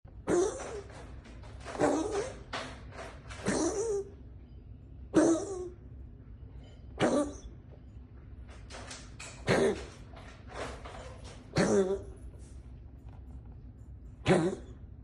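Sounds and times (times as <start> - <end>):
cat coughing: 0.2 - 0.8, 3.4 - 4.2, 5.1 - 5.8, 6.9 - 7.6, 9.4 - 10.0, 11.5 - 12.2, 14.2 - 14.8.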